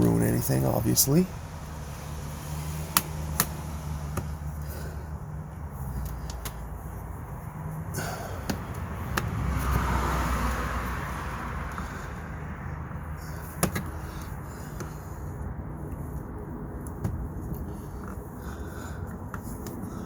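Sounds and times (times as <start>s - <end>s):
low outdoor rumble: 0.0s - 20.0s.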